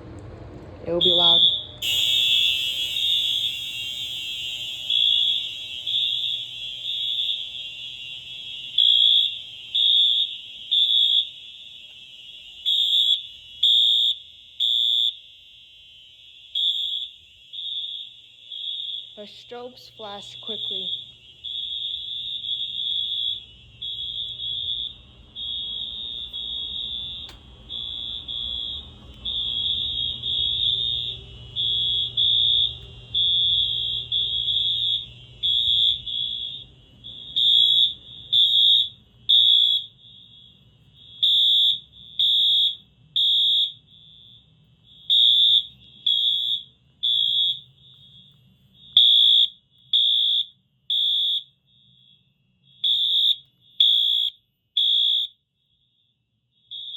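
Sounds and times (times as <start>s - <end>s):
fire alarm horns beeping: 0.9s - 56.9s.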